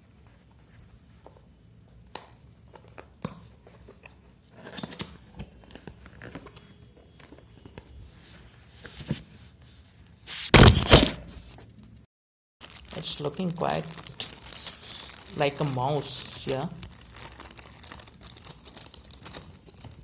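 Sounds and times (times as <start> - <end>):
plastic film crinkling: 12.6 - 20.0.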